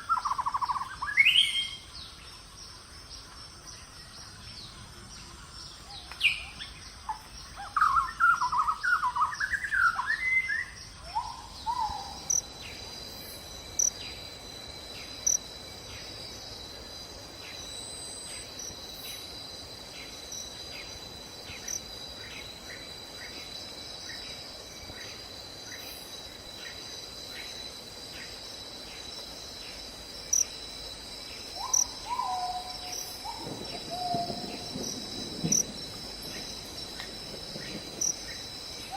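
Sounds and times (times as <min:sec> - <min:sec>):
insects trilling: 0:00.0 - 0:38.9.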